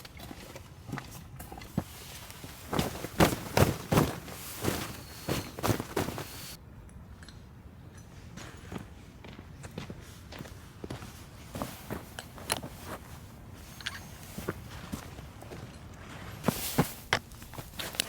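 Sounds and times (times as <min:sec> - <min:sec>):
footsteps in powder snow: 0:01.7 - 0:06.6, 0:10.0 - 0:13.6, 0:14.2 - 0:18.0.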